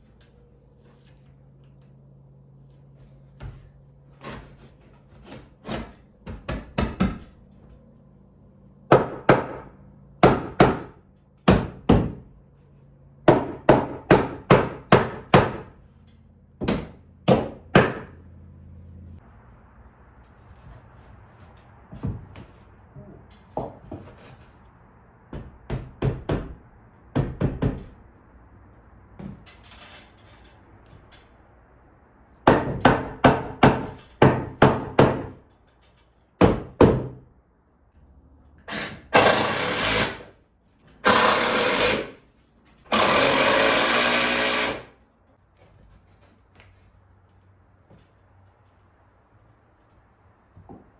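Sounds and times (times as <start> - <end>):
power tool bursts: 38.7 - 40.3, 41.0 - 42.2, 42.9 - 44.9
loud hammer blows: 41.0 - 42.2.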